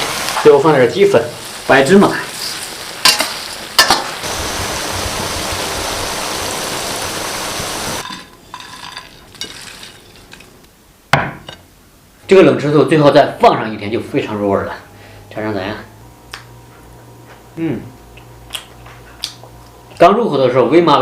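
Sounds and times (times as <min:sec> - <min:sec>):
meat sizzling in oil: 0:00.0 - 0:08.1
rustle: 0:02.3 - 0:10.7.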